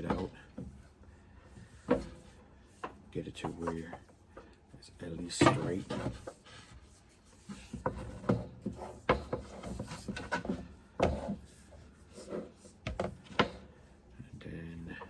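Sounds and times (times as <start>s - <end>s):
power cord rubbing and scraping: 5.0s - 13.8s.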